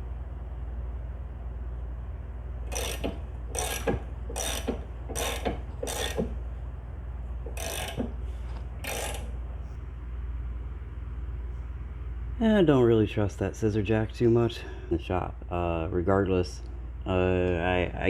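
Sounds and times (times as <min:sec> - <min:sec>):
ratchet wrench cranking jack: 0:02.7 - 0:06.4, 0:07.5 - 0:09.3.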